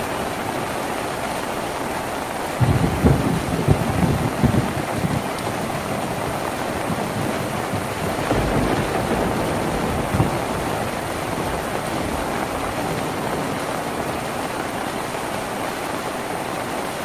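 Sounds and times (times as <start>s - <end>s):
rain on a tin roof: 0.0s - 17.0s.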